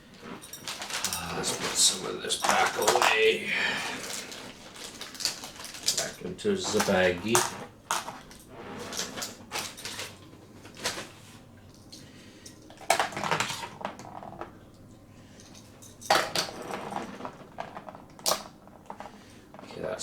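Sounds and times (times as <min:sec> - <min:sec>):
plastic toy pieces clattering: 0:00.4 - 0:10.1.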